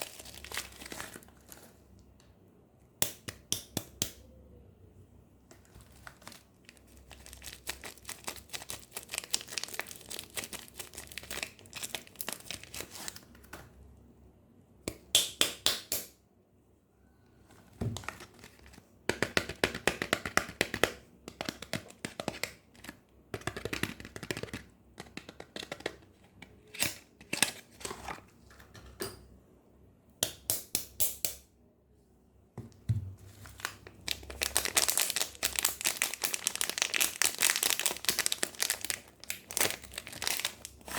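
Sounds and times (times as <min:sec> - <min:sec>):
wrapper crumpled and torn: 0:00.0 - 0:01.8, 0:05.6 - 0:13.4, 0:33.3 - 0:40.9.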